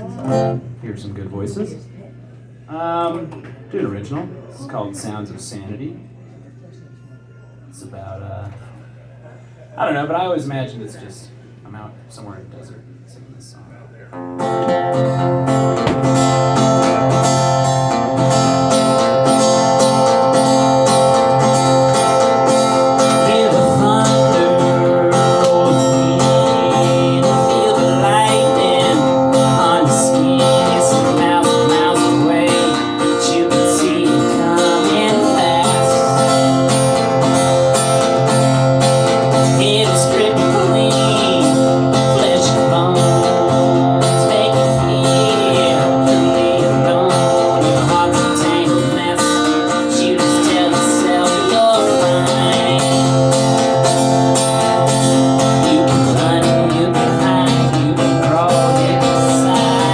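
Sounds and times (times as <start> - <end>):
guitar strumming chords: 14.1 - 59.9.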